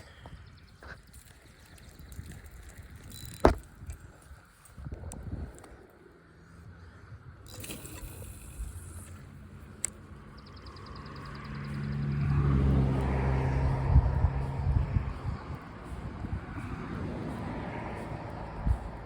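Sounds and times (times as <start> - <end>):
vehicle passing on road: 7.6 - 19.0.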